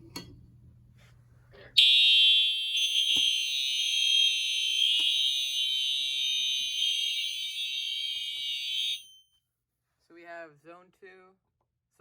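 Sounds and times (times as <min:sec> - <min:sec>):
fire alarm horns: 0:01.8 - 0:09.2.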